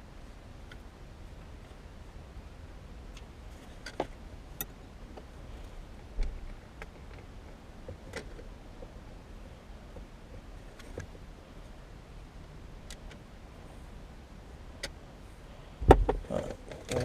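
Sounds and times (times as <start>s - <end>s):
dull thump: 15.8s - 16.3s.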